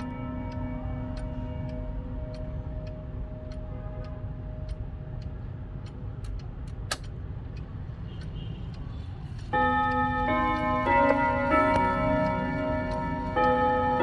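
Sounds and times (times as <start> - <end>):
clock ticking: 0.0 - 14.0
sharp click: 6.2 - 7.2.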